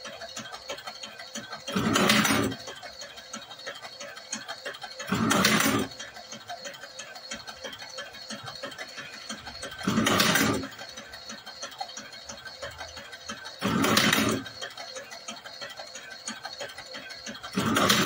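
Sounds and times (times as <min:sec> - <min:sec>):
fast mechanical ticking: 0:00.0 - 0:18.0
mechanical burst of machine: 0:09.8 - 0:10.7, 0:17.6 - 0:18.0.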